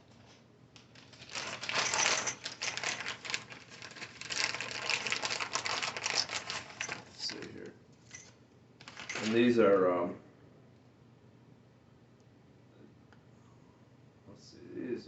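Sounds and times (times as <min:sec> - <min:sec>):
clicking and rattling of metal parts: 0:00.9 - 0:09.4.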